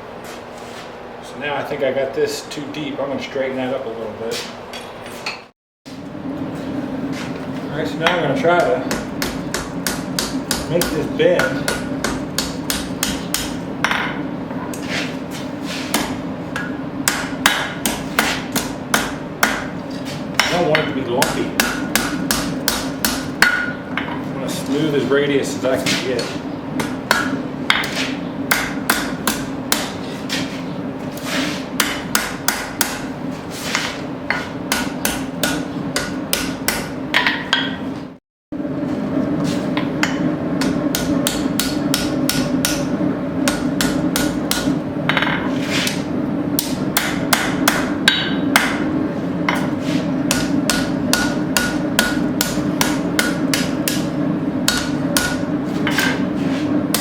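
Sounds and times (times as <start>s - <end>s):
steady hum: 5.9s - 57.0s
hammer striking steel on anvil: 8.0s - 14.9s, 15.9s - 19.8s, 20.4s - 24.2s, 25.9s - 30.5s, 31.8s - 37.8s, 39.8s - 48.9s, 49.5s - 56.3s.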